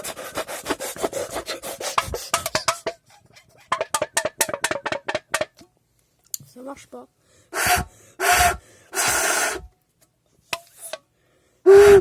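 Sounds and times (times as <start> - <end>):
person blowing into soda can: 0.0 - 2.6, 7.5 - 9.7, 11.7 - 12.0.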